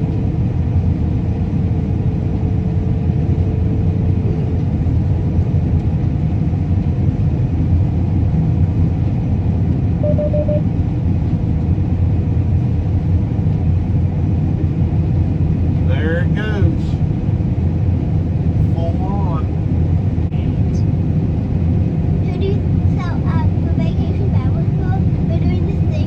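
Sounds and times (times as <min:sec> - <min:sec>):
combine harvester rumble: 0:00.0 - 0:26.0
short beeps: 0:10.0 - 0:10.7.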